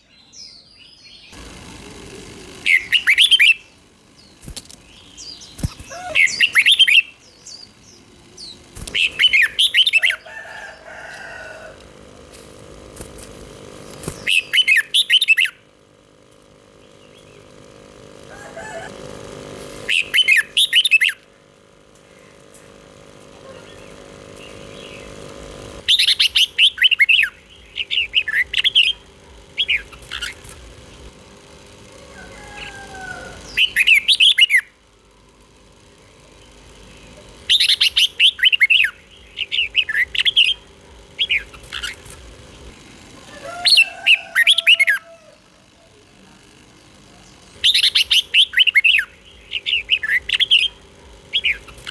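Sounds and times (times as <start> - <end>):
faint steady hum: 0.0 - 51.9
bird singing warbled phrases: 2.6 - 11.8, 14.0 - 15.9, 16.7 - 17.7, 19.9 - 21.3, 22.1 - 31.2, 32.0 - 34.8, 35.9 - 42.8, 46.7 - 51.9.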